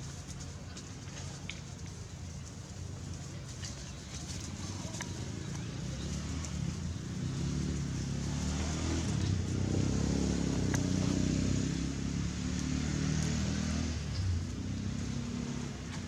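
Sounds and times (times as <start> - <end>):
vehicle engine hum: 1.8 - 16.0.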